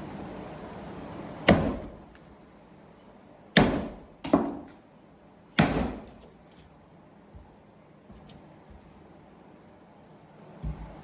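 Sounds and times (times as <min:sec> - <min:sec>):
heavy thuds of wall demolition: 0:01.4 - 0:02.1, 0:03.6 - 0:04.7, 0:05.6 - 0:06.2.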